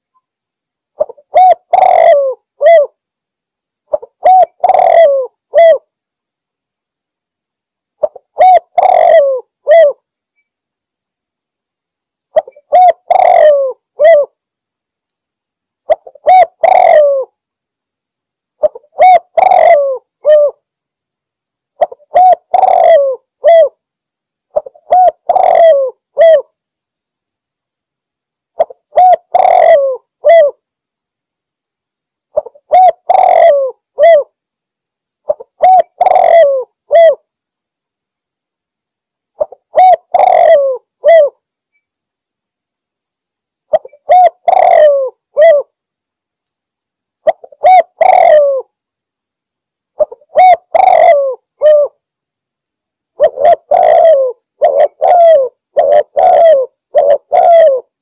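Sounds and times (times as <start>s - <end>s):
dove cooing: 1.0s - 3.0s, 3.9s - 5.9s, 8.0s - 10.0s, 12.3s - 14.4s, 15.9s - 17.3s, 18.6s - 20.6s, 21.8s - 23.8s, 24.6s - 26.5s, 28.6s - 30.6s, 32.4s - 34.3s, 35.3s - 37.2s, 39.4s - 41.4s, 43.7s - 45.7s, 47.2s - 48.7s, 50.0s - 52.0s, 53.2s - 58.0s.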